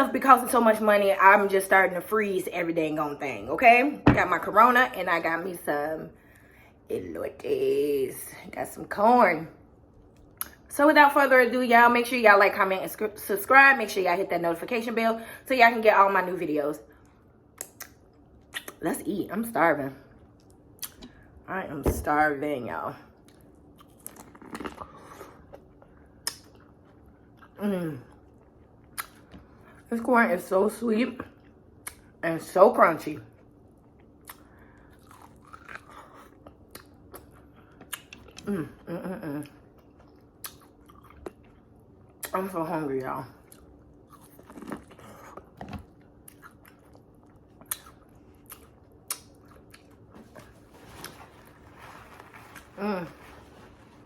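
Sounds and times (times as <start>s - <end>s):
biting and chewing crunchy corn: 35.0s - 36.6s, 44.1s - 54.0s.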